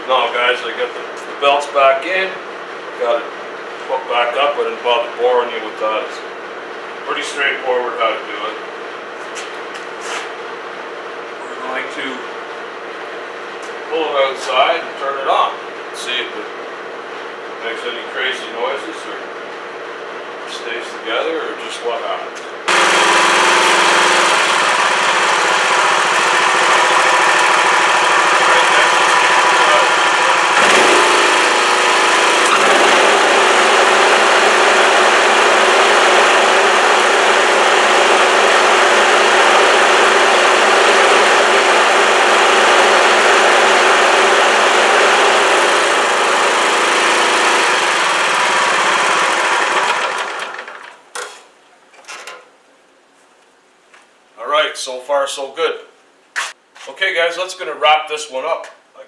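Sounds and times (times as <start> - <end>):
lawn tractor engine running: 22.7 - 51.0.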